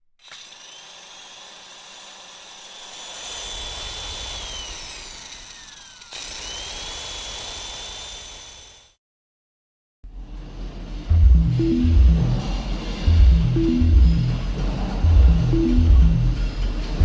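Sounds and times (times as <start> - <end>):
electric motor whining: 0.2 - 8.9
low rumble: 10.6 - 17.0.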